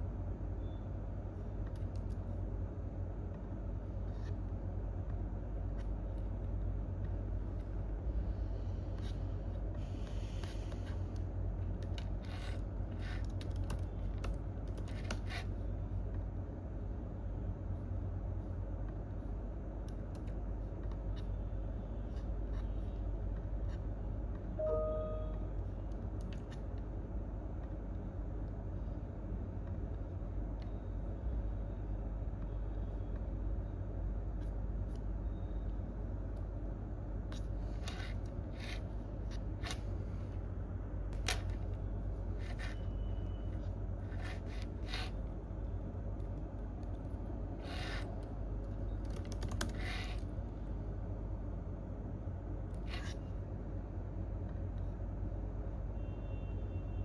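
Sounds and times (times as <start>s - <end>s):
steady low hum: 0.0s - 57.0s
short tone: 24.6s - 25.6s
scattered clicks: 48.1s - 49.8s.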